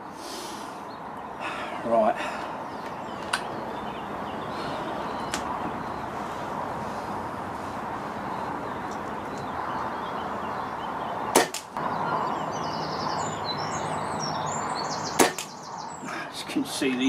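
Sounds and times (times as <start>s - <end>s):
birds chirping: 0.0s - 17.0s
air rifle shots: 11.3s - 11.8s, 15.2s - 15.6s.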